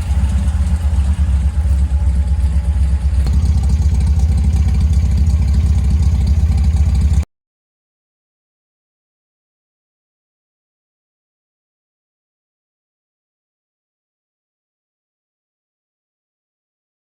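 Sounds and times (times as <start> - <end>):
pickup engine low pulsing exhaust: 0.0 - 7.2.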